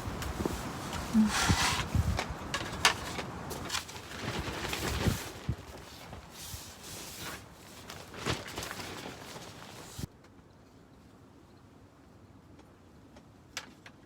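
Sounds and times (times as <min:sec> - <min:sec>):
wind hiss: 0:00.0 - 0:02.5
tent fabric flapping: 0:00.0 - 0:10.1.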